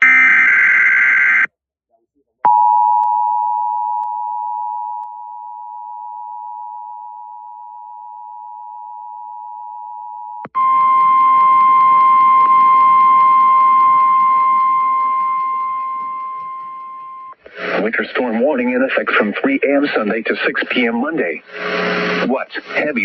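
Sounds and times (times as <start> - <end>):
steady high warning tone: 4.0 - 19.2, 21.0 - 23.0
two-tone attention signal: 10.5 - 17.9.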